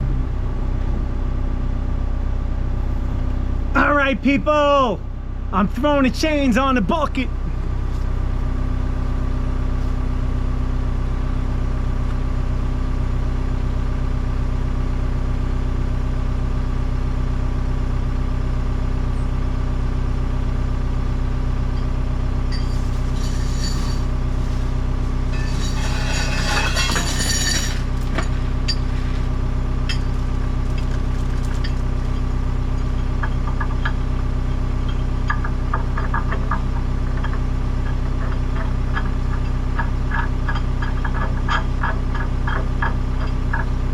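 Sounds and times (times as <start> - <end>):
machine engine idling: 20.5 - 43.9
chains clinking against metal: 22.5 - 29.2, 29.9 - 32.3.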